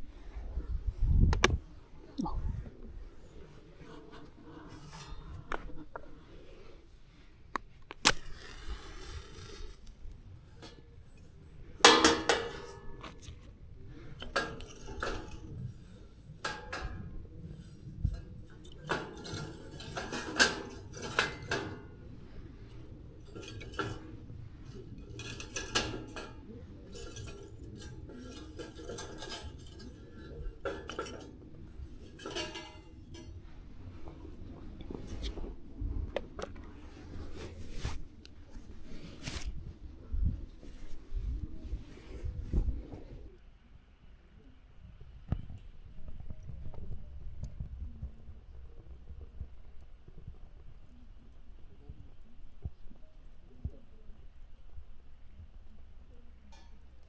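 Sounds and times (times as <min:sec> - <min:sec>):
metal cookware clinking and clattering: 0:10.5 - 0:35.4.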